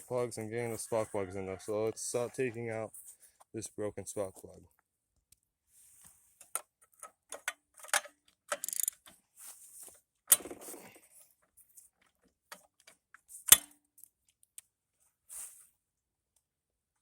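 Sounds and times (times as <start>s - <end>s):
socket wrench ratcheting: 7.9s - 9.0s.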